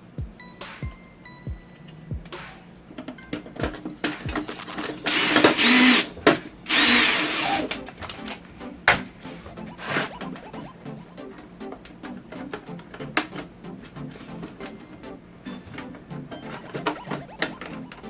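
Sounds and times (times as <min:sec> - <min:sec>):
electric screwdriver whining: 0:03.8 - 0:07.8.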